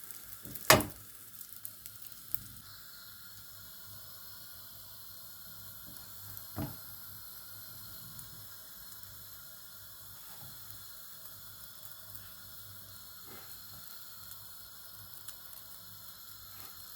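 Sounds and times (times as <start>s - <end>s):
food sizzling in a frying pan: 0.0s - 16.9s
sharp knock: 0.7s - 1.0s.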